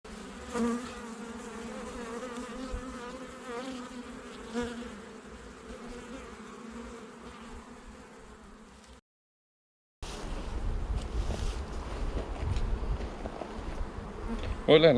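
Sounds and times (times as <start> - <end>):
bees buzzing: 0.1 - 9.0.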